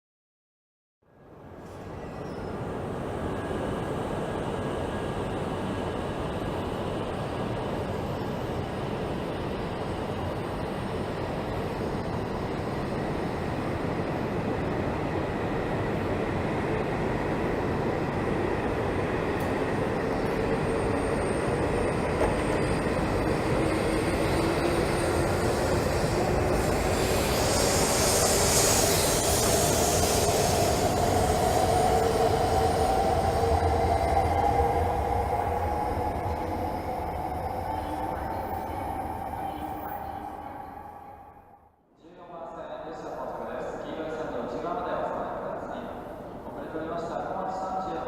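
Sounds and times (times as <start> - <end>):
train rumble: 3.9 - 41.3
train motor whine: 19.4 - 40.5.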